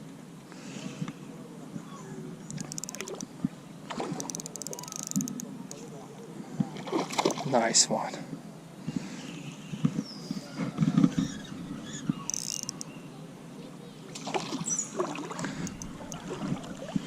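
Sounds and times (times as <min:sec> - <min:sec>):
river water splashing: 0:02.6 - 0:06.0, 0:06.7 - 0:07.7, 0:14.1 - 0:17.0.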